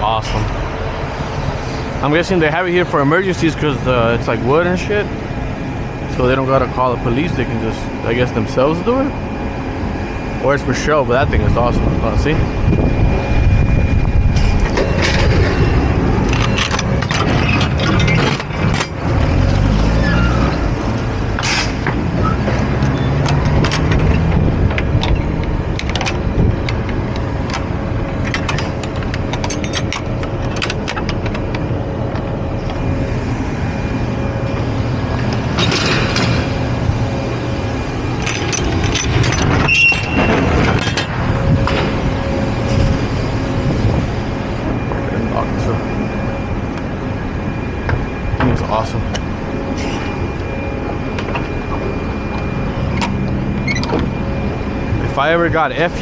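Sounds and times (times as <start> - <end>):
diesel truck engine revving: 0.0 - 29.4
clicks and rattles: 16.3 - 19.1, 22.8 - 32.3.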